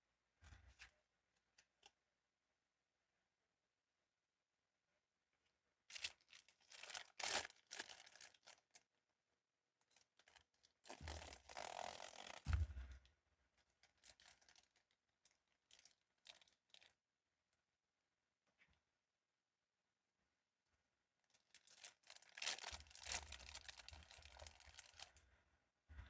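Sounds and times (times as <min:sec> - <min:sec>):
plastic packaging crinkling: 0:10.9 - 0:12.9, 0:13.9 - 0:14.9, 0:21.5 - 0:25.2
packaging tearing: 0:21.6 - 0:25.1.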